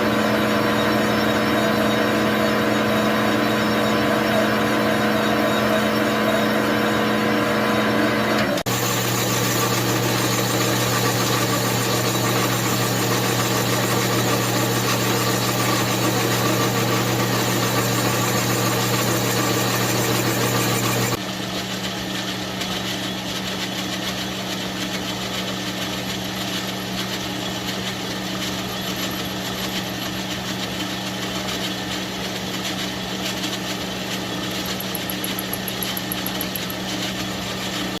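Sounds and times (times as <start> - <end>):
chainsaw engine running: 8.7 - 21.2, 33.5 - 38.0.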